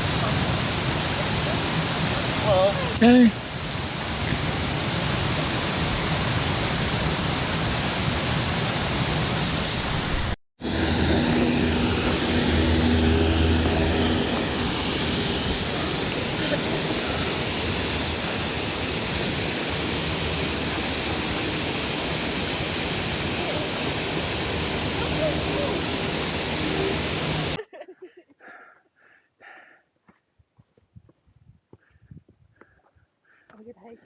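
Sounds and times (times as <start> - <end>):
mountain stream rushing: 0.0 - 10.4, 12.1 - 27.6.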